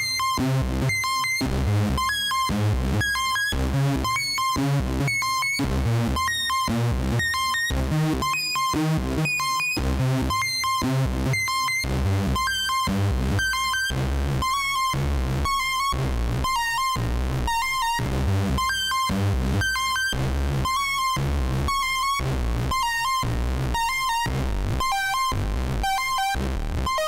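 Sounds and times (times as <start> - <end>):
synthesizer repeated bright notes: 0.0 - 27.0.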